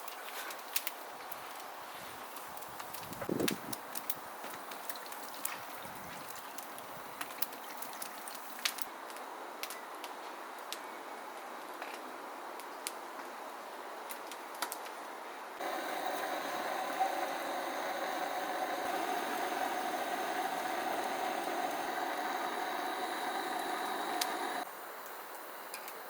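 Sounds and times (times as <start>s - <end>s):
mechanical running noise with hum: 15.6s - 24.6s.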